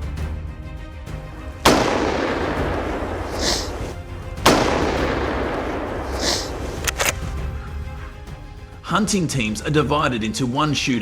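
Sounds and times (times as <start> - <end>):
rifle shots with echo: 1.7 - 7.2.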